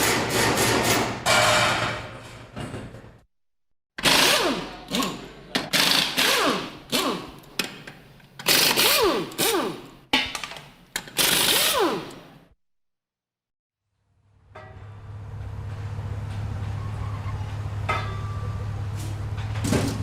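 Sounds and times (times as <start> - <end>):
pneumatic air tool rattling bursts: 4.0 - 7.7, 8.4 - 9.9, 11.0 - 12.2.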